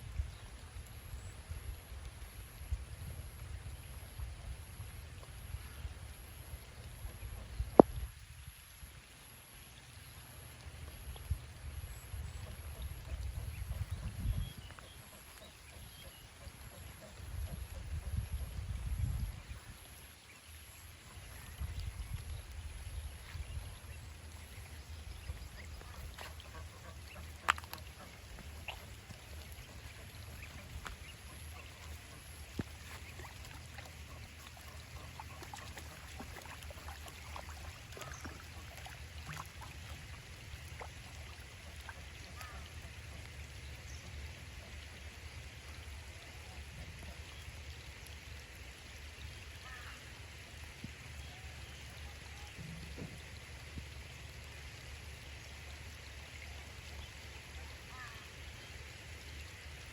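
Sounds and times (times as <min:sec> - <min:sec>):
ducks quacking: 0:25.3 - 0:38.7.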